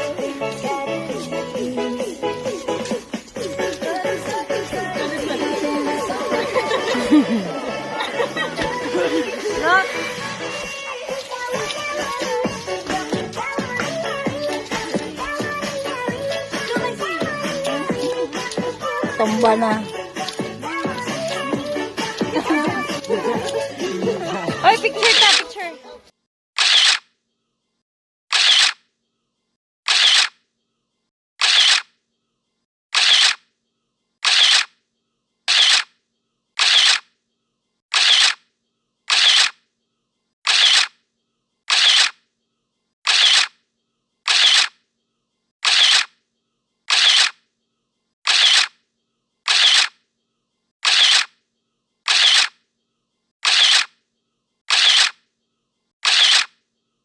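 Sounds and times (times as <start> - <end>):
camera shutter click: 26.6 - 27.0, 28.3 - 28.8, 29.9 - 30.3, 31.4 - 31.9, 33.0 - 33.4, 34.2 - 34.7, 36.6 - 37.0, 40.5 - 40.9, 41.7 - 42.2, 43.1 - 43.5, 44.3 - 44.7, 45.6 - 46.1, 46.9 - 47.4, 48.3 - 48.7, 52.1 - 52.5, 53.4 - 53.9, 54.7 - 55.2, 56.0 - 56.5.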